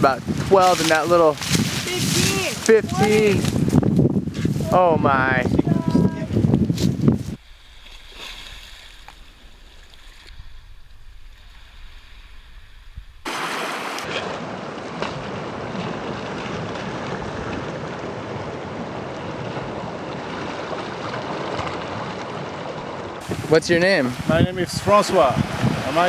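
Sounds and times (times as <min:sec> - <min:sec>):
rushing water: 0:00.0 - 0:03.7, 0:13.3 - 0:26.0
loud steady wind: 0:00.0 - 0:07.4, 0:23.1 - 0:26.0.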